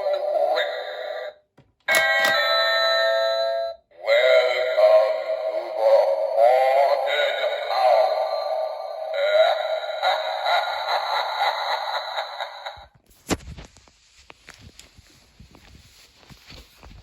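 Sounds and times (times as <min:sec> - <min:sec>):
doorbell click: 0:01.9 - 0:03.8
warbling electronic doorbell tune: 0:01.9 - 0:03.8.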